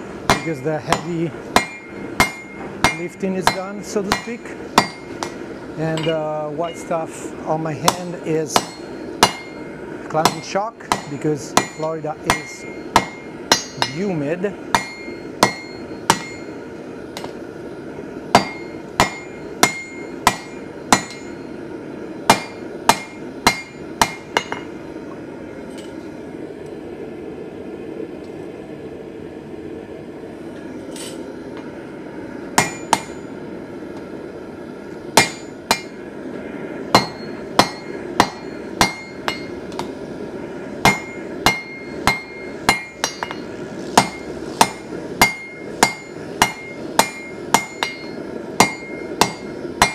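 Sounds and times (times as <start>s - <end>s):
steady low hum: 0.0s - 49.9s
hammer striking anvil: 0.2s - 7.0s, 7.8s - 16.6s, 17.2s - 17.4s, 18.3s - 21.5s, 22.3s - 24.8s, 32.6s - 33.4s, 35.2s - 36.1s, 36.9s - 40.0s, 40.8s - 49.9s.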